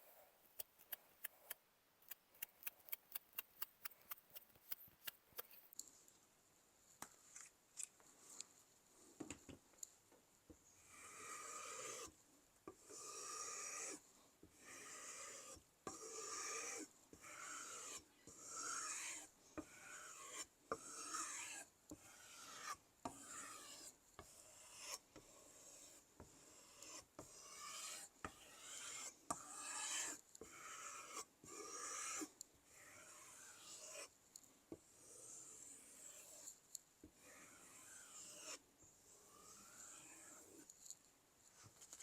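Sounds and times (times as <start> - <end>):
knife scraping on sharpening wheel: 14.8 - 23.9, 37.2 - 38.6.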